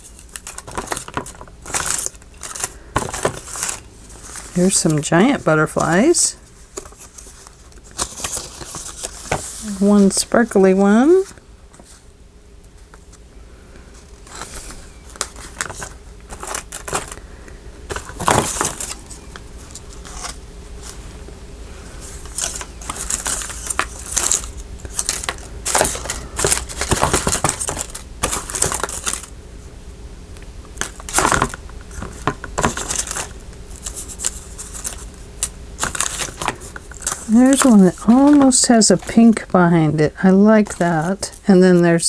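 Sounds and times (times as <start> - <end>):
hands rummaging small plastic pieces: 0.0 - 11.2, 14.3 - 17.2, 17.9 - 20.3, 22.0 - 29.3, 30.8 - 41.5.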